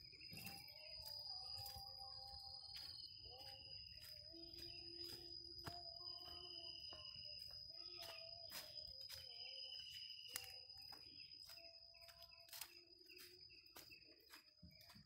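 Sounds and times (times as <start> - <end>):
high-pitched insect trill: 0.0 - 15.0.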